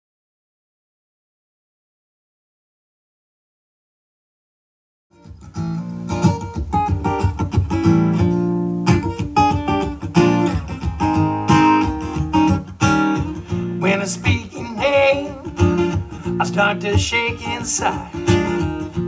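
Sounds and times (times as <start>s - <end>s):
guitar plucking and strumming: 5.2s - 19.0s.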